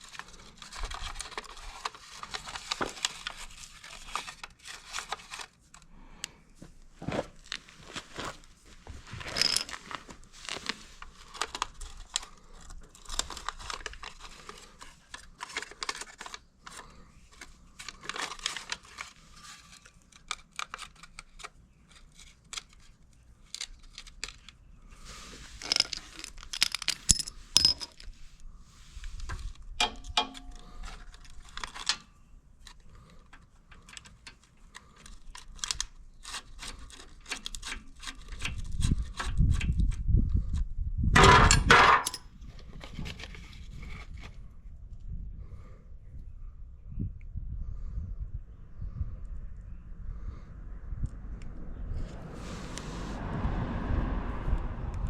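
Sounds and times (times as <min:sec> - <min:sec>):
metal parts clinking and scraping: 0:07.1 - 0:11.7, 0:25.2 - 0:28.2, 0:41.2 - 0:42.2
low rumbling scrape with clatter: 0:50.0 - 0:55.0.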